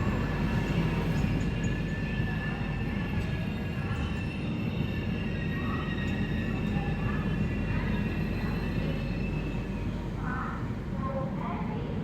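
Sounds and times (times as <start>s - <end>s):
train rumbling on track: 0.0s - 12.0s.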